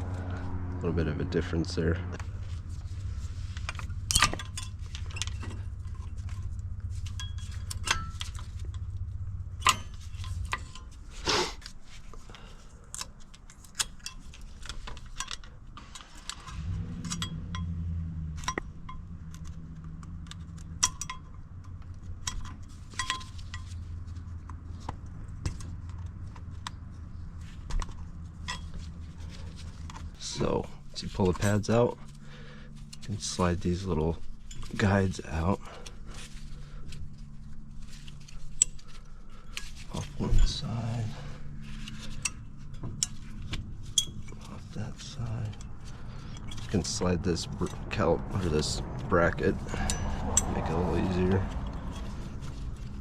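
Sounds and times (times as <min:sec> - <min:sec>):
low steady hum: 0:00.0 - 0:53.0
metallic clinks of tools: 0:49.7 - 0:52.2.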